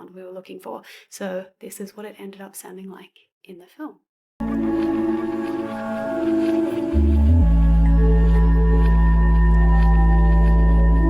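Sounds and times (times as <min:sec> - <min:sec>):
deep sustained drone: 0:04.4 - 0:11.0.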